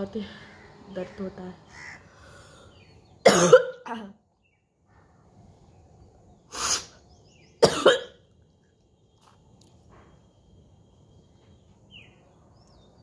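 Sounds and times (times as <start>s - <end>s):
woman coughing and hawking: 3.2s - 4.2s, 7.6s - 8.2s.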